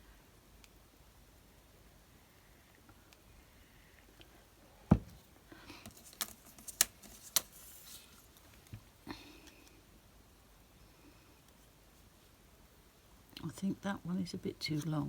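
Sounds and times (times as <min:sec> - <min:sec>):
heavy thump: 0:04.9 - 0:05.2
paper rustle: 0:05.8 - 0:08.7.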